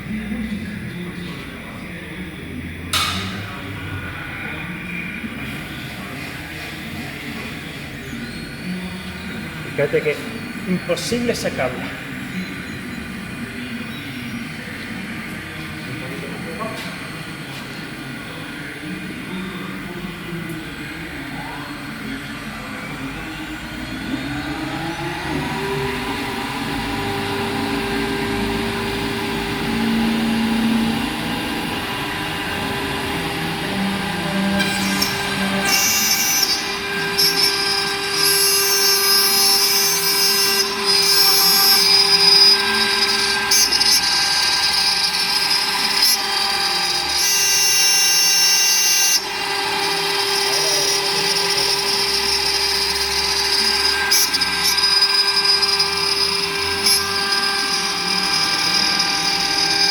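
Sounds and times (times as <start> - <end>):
cnc router spindle running: 0.0 - 59.9
high-pitched cutting sound: 24.1 - 59.9.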